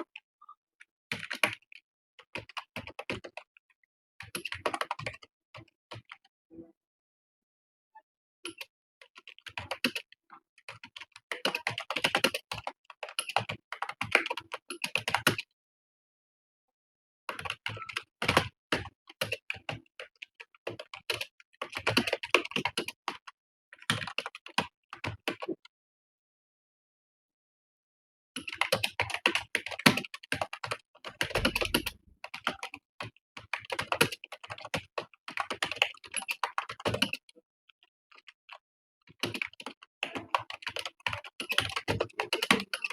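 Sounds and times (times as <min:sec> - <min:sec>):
computer keyboard typing: 0:04.2 - 0:06.2, 0:10.7 - 0:15.4, 0:17.3 - 0:19.8, 0:20.7 - 0:23.2, 0:28.4 - 0:37.2, 0:39.2 - 0:42.9.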